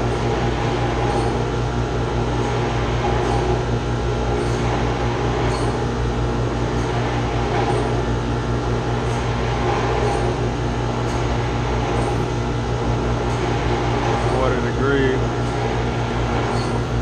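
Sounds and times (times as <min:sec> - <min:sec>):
water pump humming: 0:00.0 - 0:17.0.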